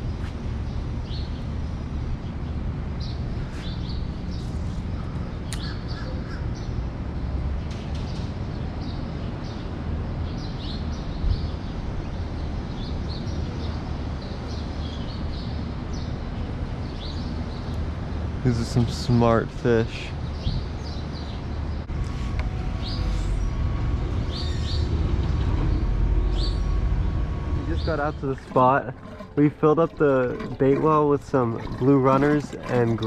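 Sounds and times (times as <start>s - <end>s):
birds giving high calls: 5.0s - 6.6s
low rumble: 21.8s - 31.9s.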